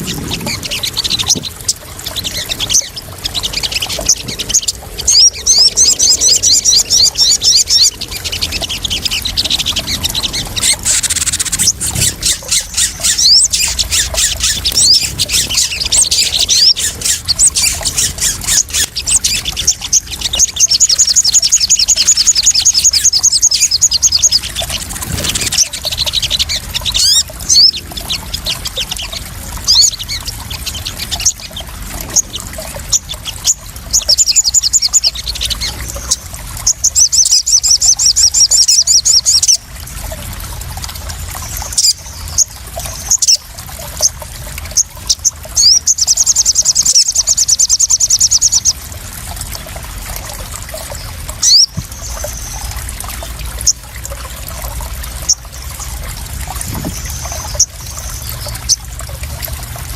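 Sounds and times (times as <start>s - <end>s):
bird chips and trills: 0.0s - 39.6s, 50.7s - 53.9s, 56.8s - 59.0s
splashing water: 0.0s - 59.9s.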